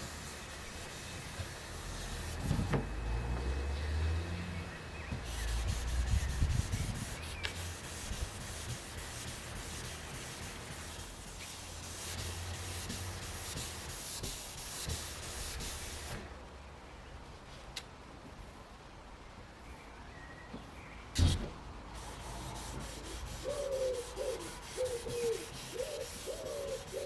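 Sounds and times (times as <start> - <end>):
wet sandpaper rubbing: 0.0 - 2.5, 5.2 - 16.2, 22.0 - 27.0.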